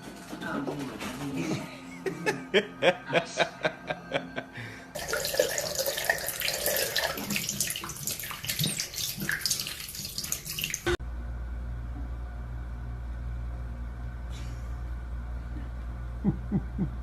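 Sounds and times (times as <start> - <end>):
running splashing water: 5.0 - 11.0.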